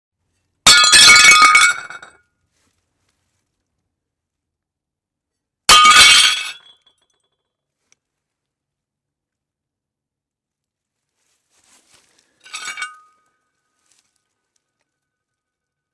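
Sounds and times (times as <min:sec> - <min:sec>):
glass breaking: 0:00.7 - 0:02.1, 0:05.7 - 0:07.0.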